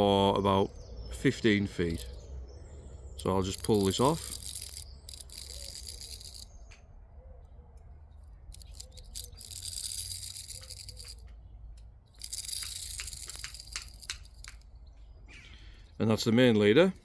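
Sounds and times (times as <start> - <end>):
fishing line pulled off spool: 3.2 - 6.5, 8.6 - 11.2, 12.2 - 14.6.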